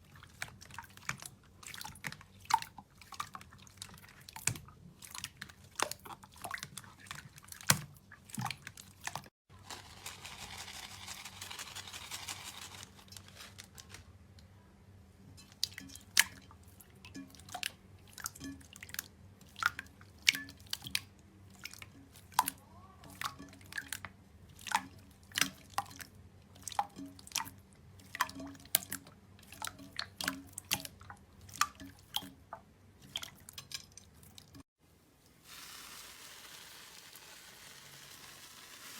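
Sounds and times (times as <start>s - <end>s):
steady hiss: 35.3s - 38.9s.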